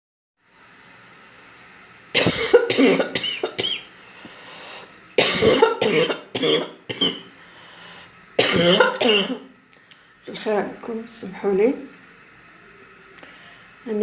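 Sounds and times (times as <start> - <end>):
person coughing harshly: 2.2 - 3.9, 5.2 - 7.3, 8.4 - 9.5.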